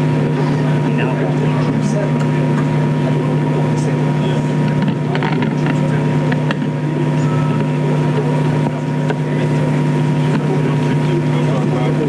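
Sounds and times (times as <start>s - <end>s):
loud machine hum: 0.0s - 12.0s.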